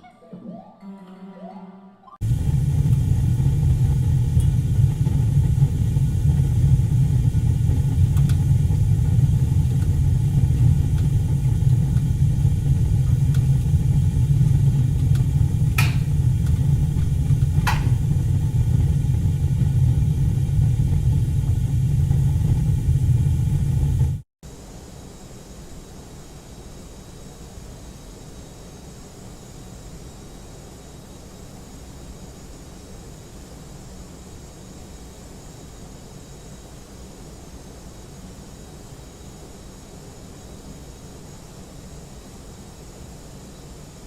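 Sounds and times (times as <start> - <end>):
low rumble: 2.2 - 24.2.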